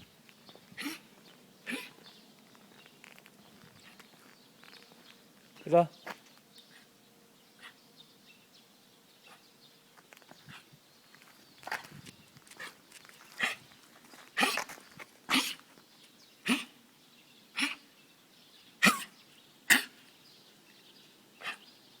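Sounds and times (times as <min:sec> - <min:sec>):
dog coughing: 0:00.8 - 0:02.0, 0:14.4 - 0:14.7, 0:15.3 - 0:15.6, 0:16.4 - 0:16.8, 0:17.6 - 0:17.8, 0:18.8 - 0:20.0, 0:21.4 - 0:21.6.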